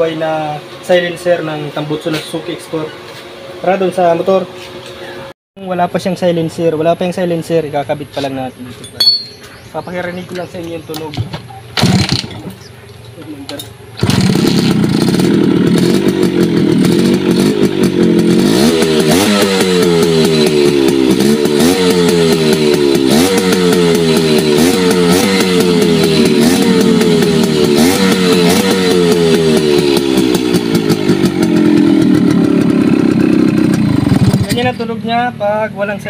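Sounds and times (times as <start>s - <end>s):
motorcycle engine revving: 9.0s - 36.0s.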